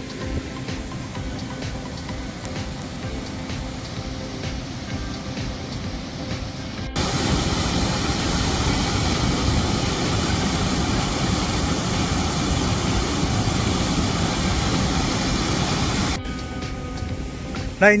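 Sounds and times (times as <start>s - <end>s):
waterfall roaring: 0.0s - 16.2s.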